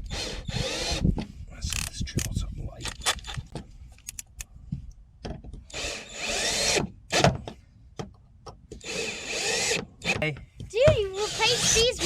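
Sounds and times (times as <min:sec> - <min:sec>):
power drill motor whining: 0:00.0 - 0:01.1, 0:05.7 - 0:07.2, 0:08.8 - 0:10.2, 0:11.1 - 0:12.0.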